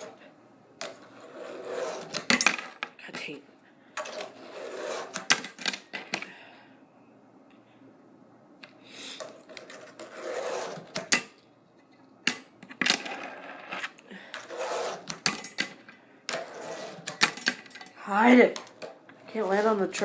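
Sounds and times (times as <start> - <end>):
fingerboard grinding along rail: 1.0 - 2.4, 4.0 - 5.3, 9.5 - 11.1, 14.4 - 15.3, 16.3 - 17.2.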